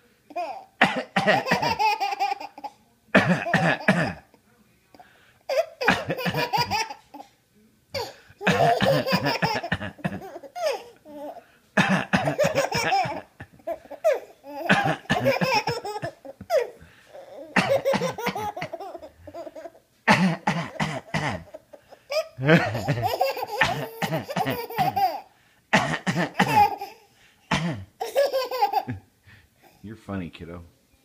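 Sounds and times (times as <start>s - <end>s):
baby laughing: 0.3s - 0.7s, 1.3s - 2.8s, 5.5s - 7.3s, 8.0s - 11.4s, 12.2s - 19.8s, 20.4s - 25.3s, 26.2s - 27.1s, 28.0s - 29.0s
man coughing: 0.8s - 1.8s, 3.1s - 4.3s, 5.5s - 6.8s, 8.0s - 10.8s, 11.8s - 16.7s, 17.6s - 19.4s, 20.1s - 28.0s.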